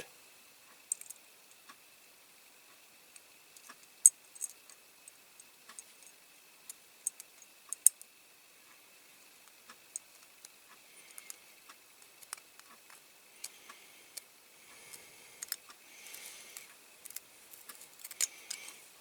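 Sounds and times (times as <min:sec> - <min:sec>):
screwdriver clicking on small screw: 0:18.0 - 0:18.7.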